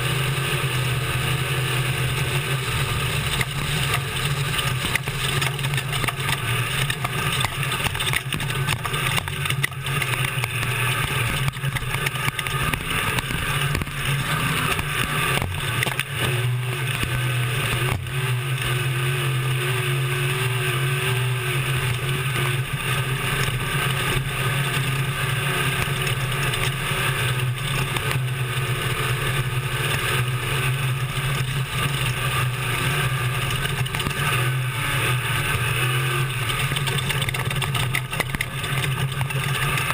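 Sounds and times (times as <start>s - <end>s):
truck engine running: 0.0s - 39.9s
knocks and rattles: 3.2s - 18.2s, 36.3s - 39.9s.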